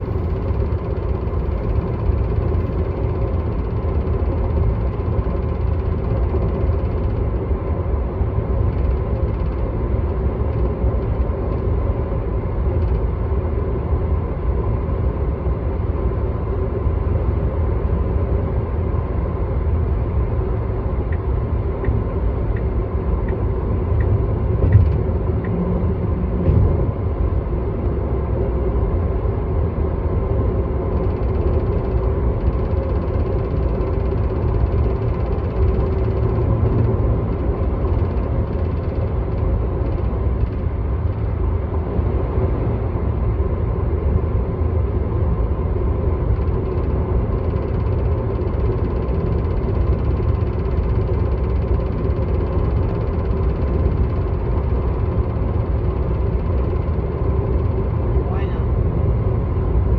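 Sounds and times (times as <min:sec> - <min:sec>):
light rattle in car: 0:00.0 - 0:13.4, 0:21.1 - 0:28.0, 0:30.7 - 0:42.8, 0:45.8 - 0:59.9
car road rumble: 0:00.0 - 0:59.9.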